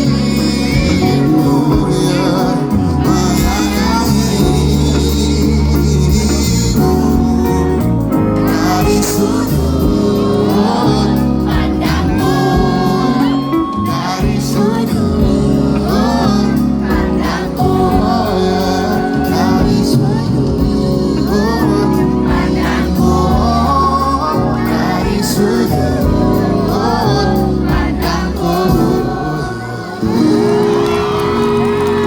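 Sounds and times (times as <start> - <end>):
live pop band: 0.0 - 32.0
person singing: 0.0 - 32.0.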